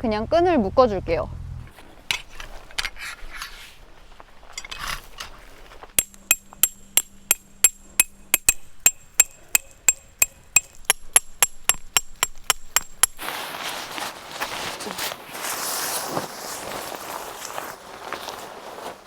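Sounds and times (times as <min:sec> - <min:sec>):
tent peg being hammered: 0:06.0 - 0:13.3.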